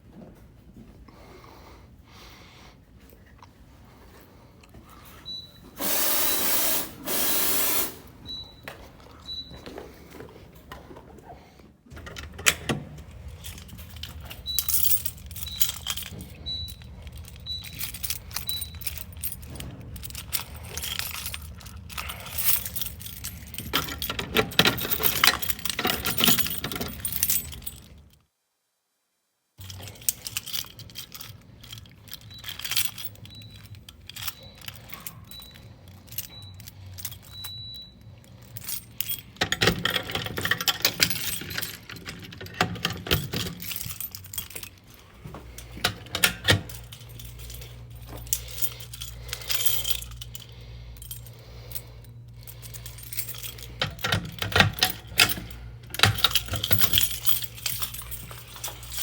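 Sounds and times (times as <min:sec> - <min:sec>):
loud bursts of hissing: 0:05.8 - 0:08.1
metallic jingling and clinking: 0:12.1 - 0:28.2, 0:29.6 - 0:59.0.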